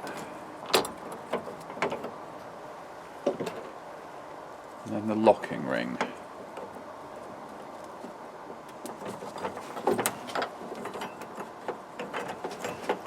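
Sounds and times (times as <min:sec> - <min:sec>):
small clicks and knocks: 0:07.5 - 0:13.0.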